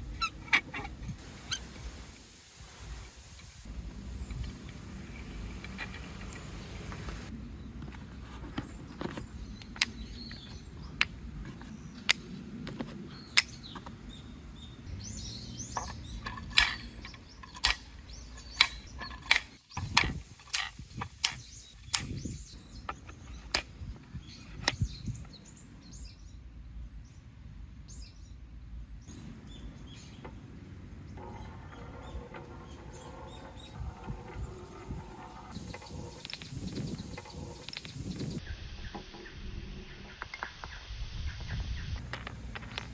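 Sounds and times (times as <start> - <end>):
birds chirping: 0.0 - 26.4, 27.9 - 42.9
marbles clacking on wood: 15.6 - 22.2, 31.2 - 38.4, 42.0 - 42.9.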